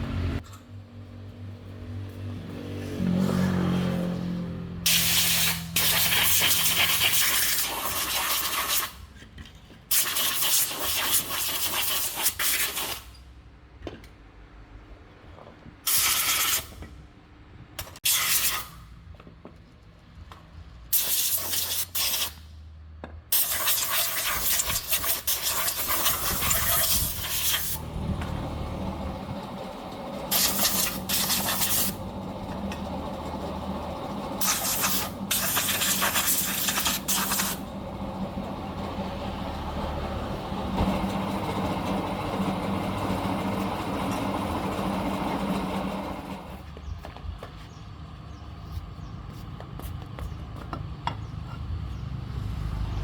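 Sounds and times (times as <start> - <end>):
loud hissing spray: 4.9 - 8.9, 15.9 - 16.7, 20.9 - 22.4, 23.4 - 27.9, 30.3 - 32.0, 34.4 - 37.6
motor hum winding down: 27.7 - 46.6.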